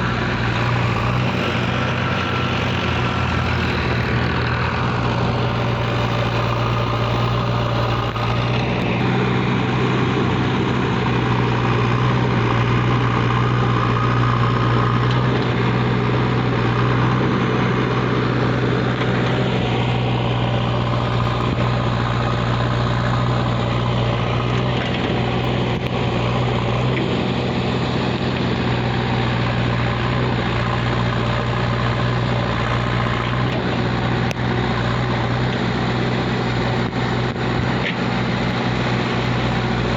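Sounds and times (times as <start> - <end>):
diesel engine running: 0.0 - 39.9.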